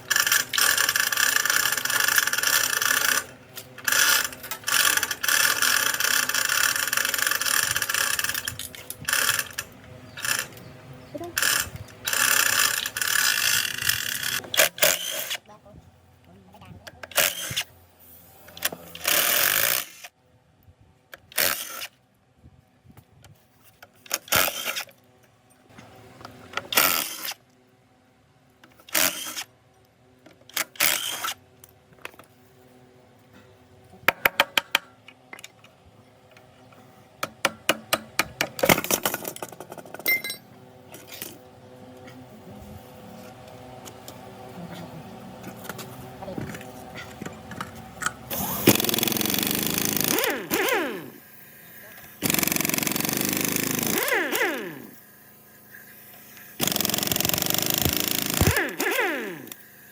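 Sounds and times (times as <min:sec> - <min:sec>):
mechanic's tools noisy bursts: 0:00.0 - 0:10.7, 0:11.3 - 0:15.4, 0:17.0 - 0:17.7, 0:18.4 - 0:20.1, 0:21.2 - 0:22.0, 0:24.0 - 0:25.0, 0:26.5 - 0:27.5, 0:28.7 - 0:29.5, 0:30.5 - 0:31.4, 0:47.2 - 0:59.9.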